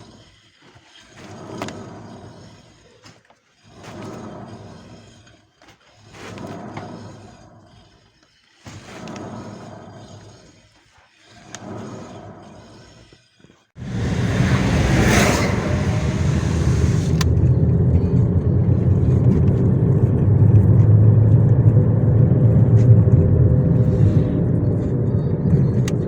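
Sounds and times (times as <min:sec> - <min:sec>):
wheel bearing low drone: 0:00.0 - 0:26.0
hissing rush: 0:13.8 - 0:18.4.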